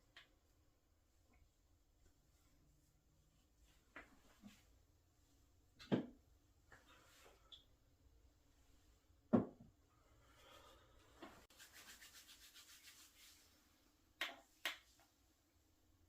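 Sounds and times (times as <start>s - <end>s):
hands rubbing over body: 11.4s - 13.7s.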